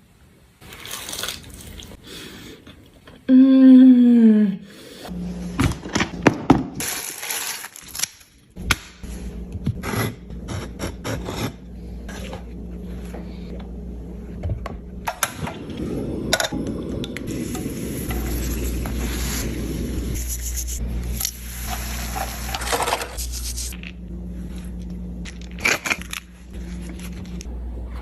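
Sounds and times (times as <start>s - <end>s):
steady low hum: 3.3s - 6.4s, 8.5s - 28.0s.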